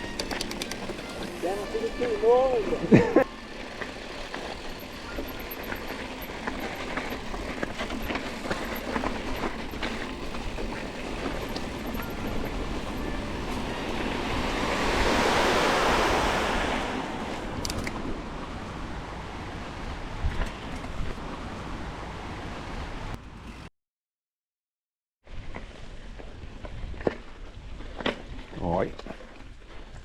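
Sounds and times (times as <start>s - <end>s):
bike rattles and ticks: 0.0s - 14.6s, 17.5s - 18.2s
rushing noise: 0.0s - 20.3s
bike tyres on dirt trail: 0.0s - 22.4s, 25.3s - 30.0s.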